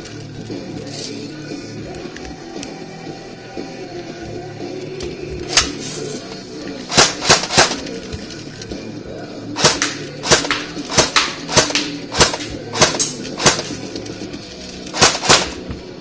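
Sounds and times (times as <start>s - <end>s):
background music: 0.0s - 16.0s
sharp clap-like hits: 9.6s - 13.6s.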